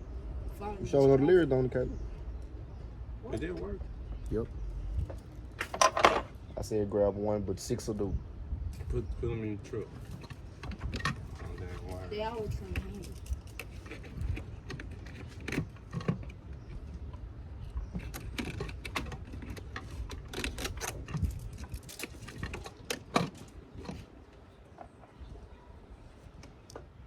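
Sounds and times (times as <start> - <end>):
hands handling wiring and tools: 17.9 - 25.0.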